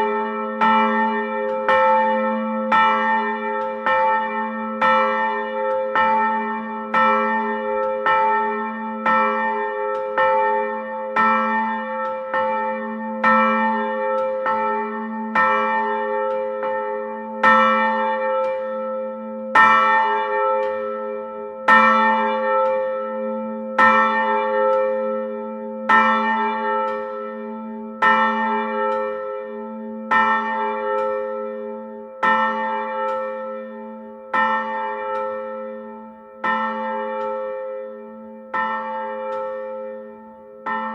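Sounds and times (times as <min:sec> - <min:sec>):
church bell tolling: 0:00.0 - 0:40.9.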